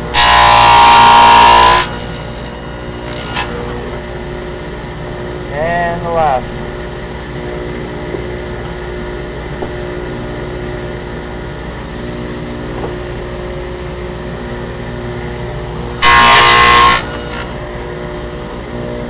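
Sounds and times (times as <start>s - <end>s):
table saw humming: 0.0s - 19.0s
saw blade cutting board: 0.2s - 2.3s, 16.0s - 17.6s.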